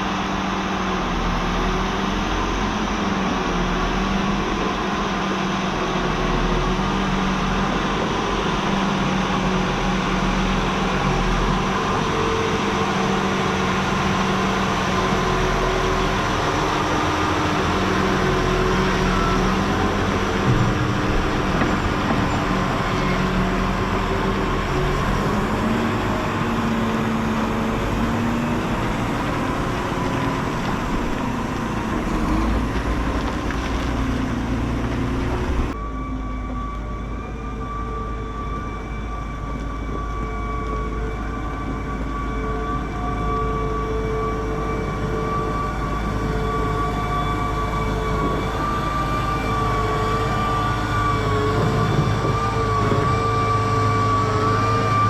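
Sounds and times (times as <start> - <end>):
vehicle engine running: 6.2 - 35.8.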